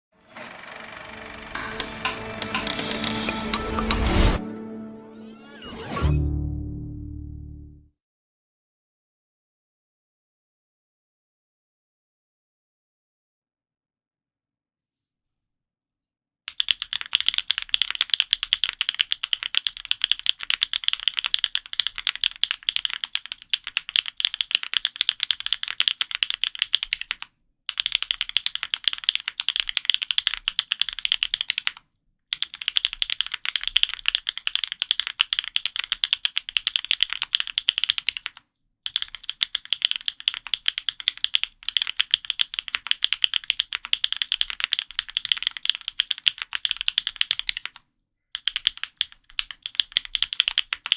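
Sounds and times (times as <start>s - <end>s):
mechanical keyboard typing: 0.4s - 4.3s, 16.5s - 47.8s, 48.4s - 50.9s.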